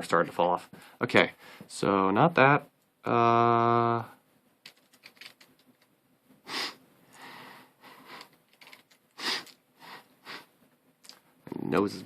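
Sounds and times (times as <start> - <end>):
plastic puzzle pieces clicking: 4.6 - 5.9, 8.2 - 9.6
person sniffing: 6.4 - 8.4, 9.1 - 10.5
soft breath: 6.4 - 8.4.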